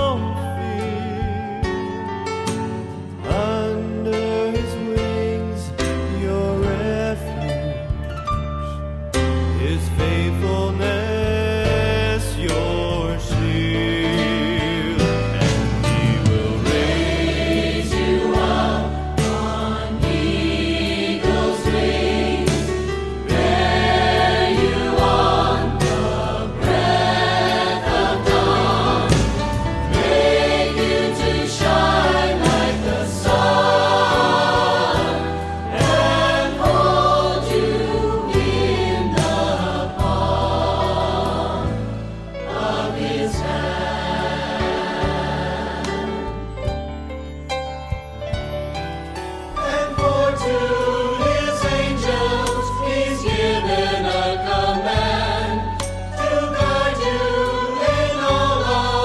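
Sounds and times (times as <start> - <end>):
gospel choir singing: 11.9 - 46.8, 49.6 - 59.0.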